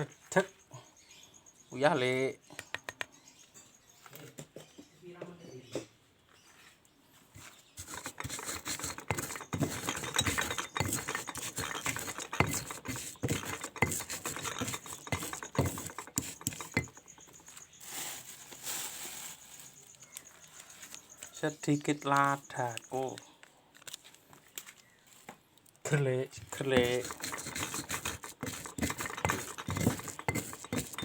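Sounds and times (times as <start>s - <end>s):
kitchen utensils knocking and clinking: 7.8s - 17.6s, 26.4s - 31.0s.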